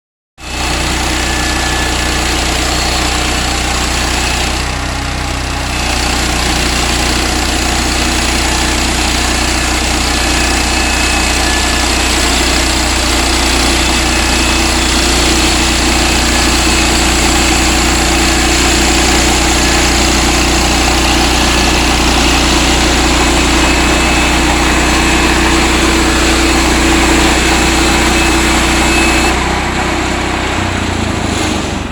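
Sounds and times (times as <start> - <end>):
sawmill machinery engine drone: 0.4 - 31.9
humming tone: 7.8 - 31.2.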